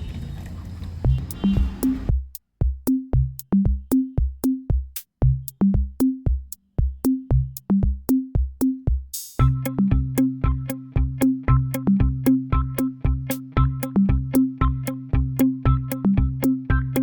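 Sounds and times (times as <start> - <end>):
short pitched bass notes: 1.1 - 2.2, 9.4 - 17.0
synth chords: 1.1 - 2.2, 9.4 - 17.0
kick drum: 1.1 - 17.0.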